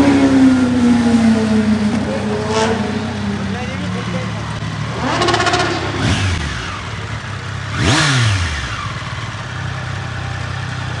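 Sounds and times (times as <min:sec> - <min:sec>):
motorcycle engine idling: 0:00.0 - 0:11.0
motorcycle engine revving: 0:00.0 - 0:11.0.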